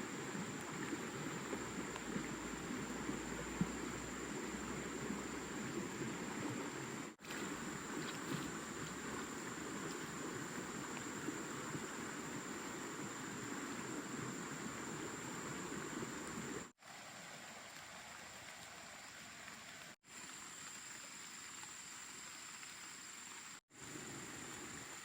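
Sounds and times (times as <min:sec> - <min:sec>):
water hissing: 0:00.0 - 0:16.8.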